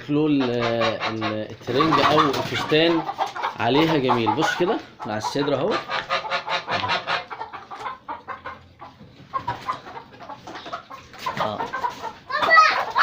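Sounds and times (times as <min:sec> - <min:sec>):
goose honking: 0:00.3 - 0:08.6.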